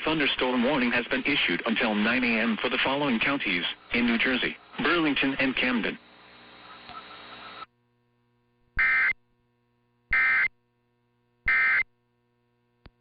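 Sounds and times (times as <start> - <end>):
faint broadcast hiss: 0.0 - 7.7
digital data tone bursts: 8.8 - 9.2, 10.1 - 10.5, 11.5 - 11.8.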